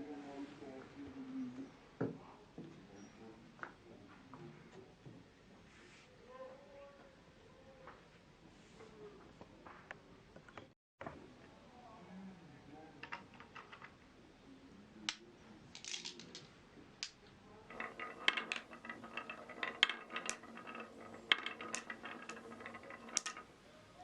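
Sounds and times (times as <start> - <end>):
marbles clattering down wooden track: 13.0 - 13.9, 15.8 - 16.5, 17.7 - 23.5.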